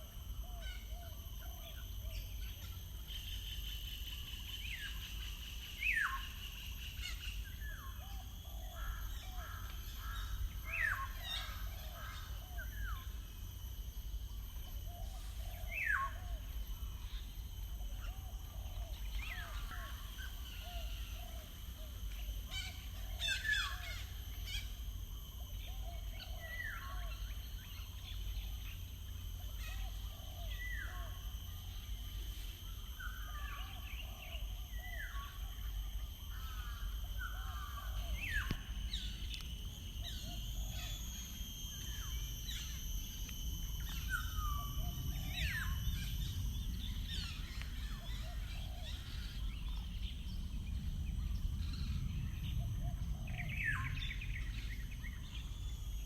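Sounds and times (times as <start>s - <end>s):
high-pitched ringing: 0.0s - 56.0s
birds singing: 0.3s - 56.0s
low background rumble: 27.2s - 56.0s.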